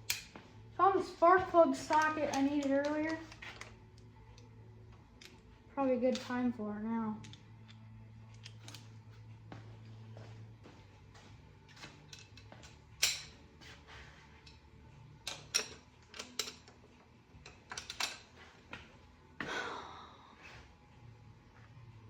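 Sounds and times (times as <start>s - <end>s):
metal tools clinking and clicking: 0.0s - 0.4s, 1.8s - 5.5s, 6.1s - 6.4s, 7.2s - 9.0s, 11.7s - 13.5s, 15.2s - 18.4s
faint low hum: 0.0s - 22.0s
tools clattering rattle: 11.7s - 14.6s, 15.2s - 18.4s.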